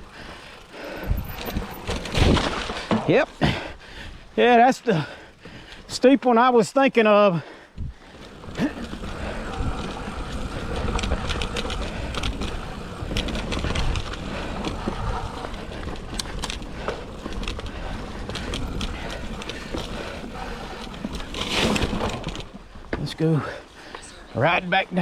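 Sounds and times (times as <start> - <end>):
bike tyres rumbling on dirt: 0.0 - 6.0, 7.8 - 25.0
bike rattles and clicks: 0.0 - 6.1, 7.7 - 24.2.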